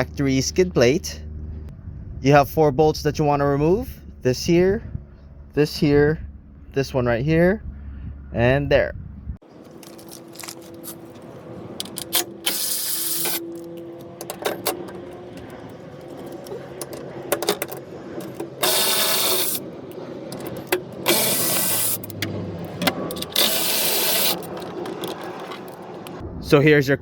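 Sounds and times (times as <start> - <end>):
clicks and knocks of handling tools: 9.6 - 12.6, 13.2 - 19.0
cordless power tool bursts: 11.9 - 13.7, 18.3 - 19.6, 20.7 - 22.2, 23.2 - 24.6.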